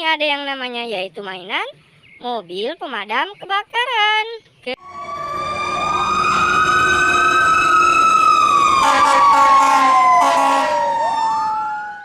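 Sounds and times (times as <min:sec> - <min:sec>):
fire engine siren wailing: 0:04.8 - 0:12.0.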